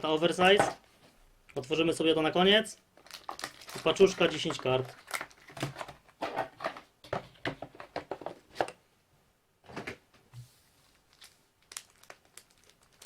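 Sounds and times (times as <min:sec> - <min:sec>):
packaging rustles and taps: 0:03.0 - 0:08.8.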